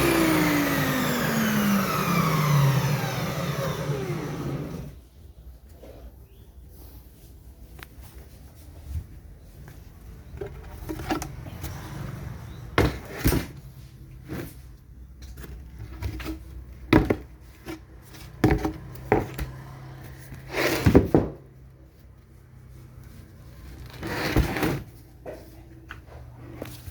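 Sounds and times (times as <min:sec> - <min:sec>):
wood knocking and scraping on wood: 0:09.7 - 0:11.9, 0:12.7 - 0:19.6, 0:20.4 - 0:21.5.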